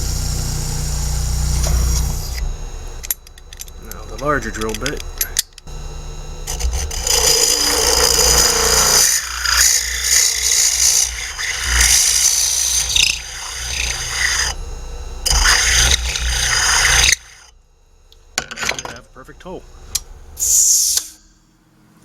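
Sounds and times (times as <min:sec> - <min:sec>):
drill bit cutting wood: 0:00.0 - 0:17.6
power drill motor hum: 0:00.0 - 0:21.1.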